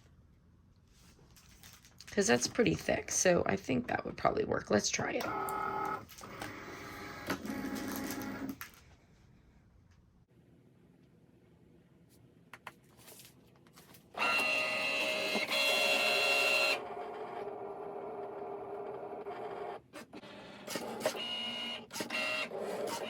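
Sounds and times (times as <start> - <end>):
cutting machine motors whirring: 5.2 - 8.6, 14.2 - 23.0.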